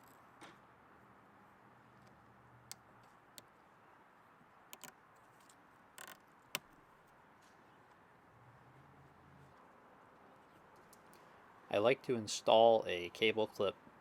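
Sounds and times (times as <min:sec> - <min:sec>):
plastic clips clicking: 0:04.7 - 0:05.0.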